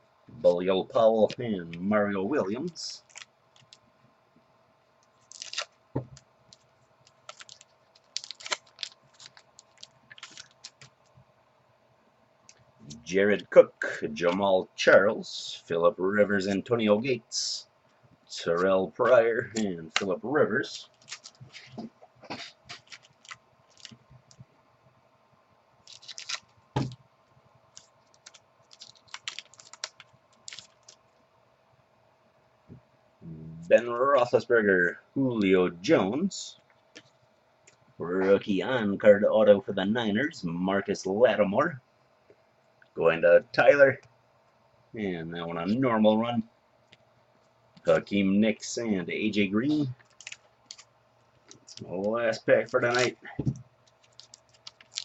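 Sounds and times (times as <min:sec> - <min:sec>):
cards and foil wrapper crinkling: 0:02.5 - 0:03.8, 0:05.1 - 0:11.1, 0:18.4 - 0:24.4, 0:25.8 - 0:27.0, 0:27.7 - 0:31.1, 0:49.7 - 0:55.0.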